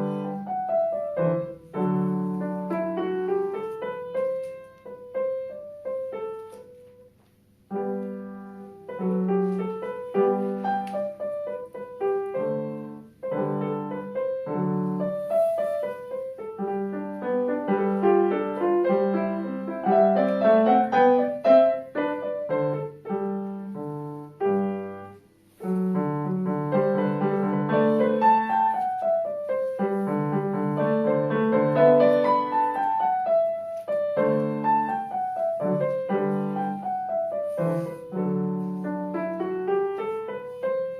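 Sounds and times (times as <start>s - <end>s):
solo piano classical piece: 0.0s - 40.9s.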